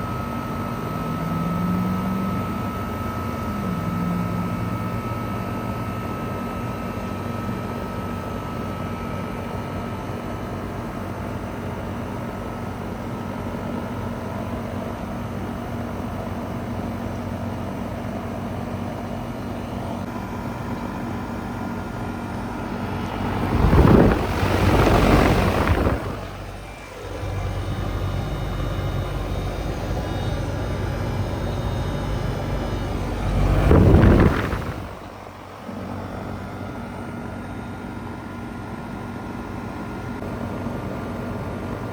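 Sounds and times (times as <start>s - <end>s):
compressor humming: 0.0s - 41.9s
fan airflow: 0.0s - 41.9s
loud whooshing: 22.6s - 27.6s, 31.5s - 35.2s.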